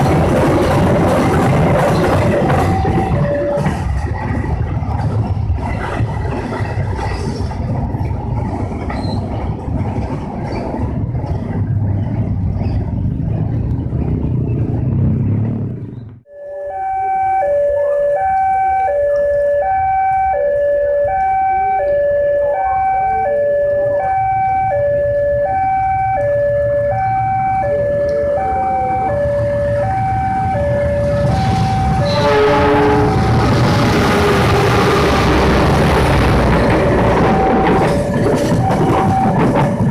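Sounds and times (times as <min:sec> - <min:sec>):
broad rumbling noise: 0:00.0 - 0:16.3, 0:21.4 - 0:39.9
two-tone electronic alarm: 0:02.0 - 0:03.8, 0:16.3 - 0:33.4, 0:36.8 - 0:39.9.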